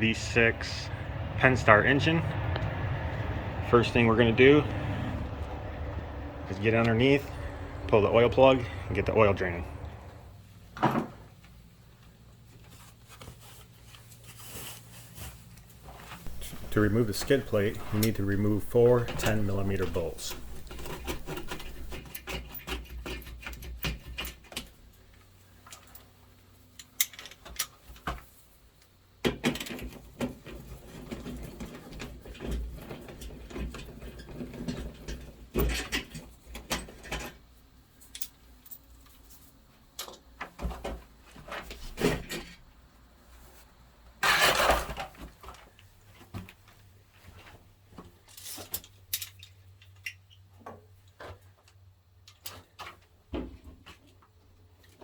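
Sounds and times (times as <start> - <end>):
metal clinks and rattles: 16.3 - 24.4.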